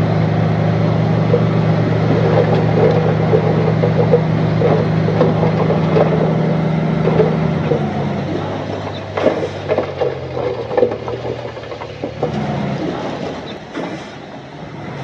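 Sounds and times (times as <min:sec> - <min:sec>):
heavy machine engine running: 0:00.0 - 0:15.0.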